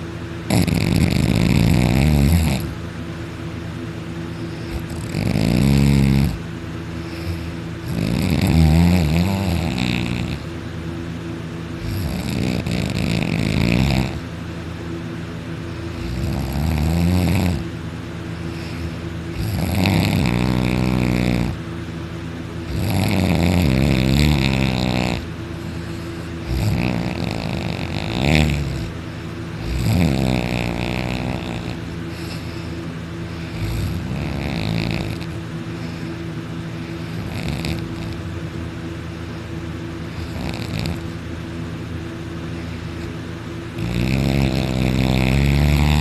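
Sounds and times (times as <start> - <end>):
person snoring heavily: 0.0 - 2.8, 4.3 - 10.5, 11.8 - 14.3, 15.8 - 17.7, 18.4 - 21.6, 22.6 - 29.0, 29.6 - 38.3, 40.0 - 41.2, 43.7 - 46.0
steady low hum: 0.0 - 46.0.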